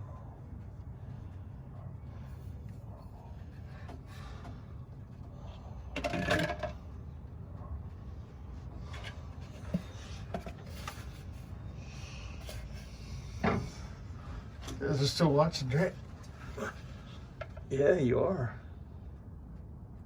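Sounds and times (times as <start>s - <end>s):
low steady hum: 0.0s - 20.0s
small hard parts clattering: 5.9s - 6.8s.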